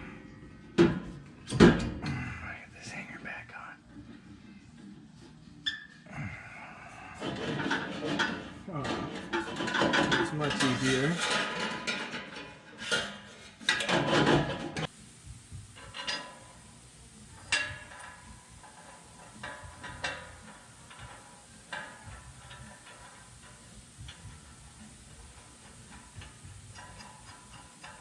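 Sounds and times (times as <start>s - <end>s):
scraping clatters: 7.2s - 14.9s.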